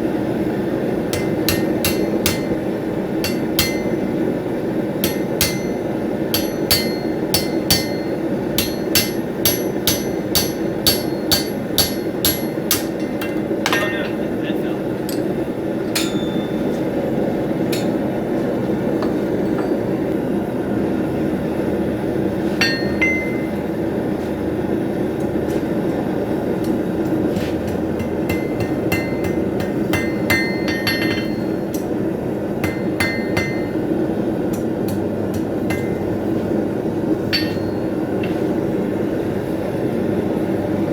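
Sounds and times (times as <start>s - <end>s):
hammer ringing on anvil: 1.1s - 4.4s, 5.0s - 14.3s, 15.1s - 17.0s, 17.7s - 18.2s, 19.0s - 20.1s, 22.6s - 23.7s, 27.7s - 31.8s, 32.6s - 33.9s, 35.3s - 36.2s, 37.2s - 38.4s.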